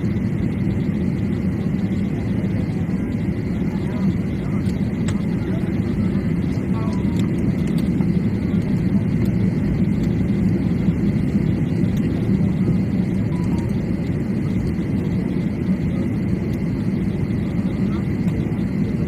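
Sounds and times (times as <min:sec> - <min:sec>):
jet airliner cabin rumble: 0:00.0 - 0:19.0
faint steady high tone: 0:13.3 - 0:13.9.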